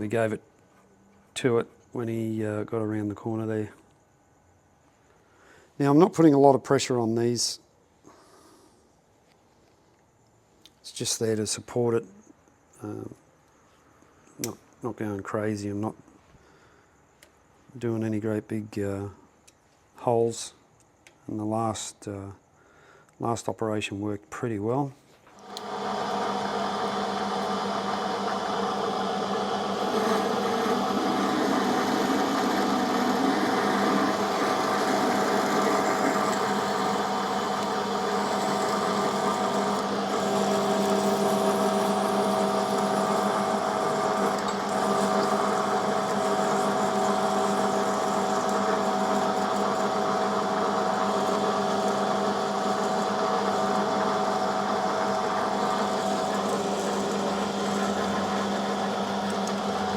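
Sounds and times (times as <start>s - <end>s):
drill boring into steel: 25.4s - 59.9s
metal lathe humming: 25.4s - 59.9s.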